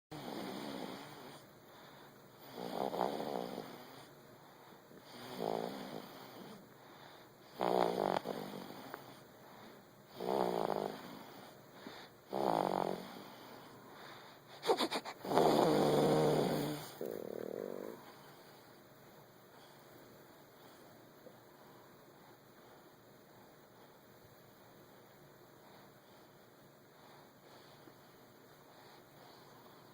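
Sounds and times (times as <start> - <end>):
person snoring: 5.0 - 6.6, 10.1 - 11.5, 12.3 - 13.5, 14.6 - 18.2.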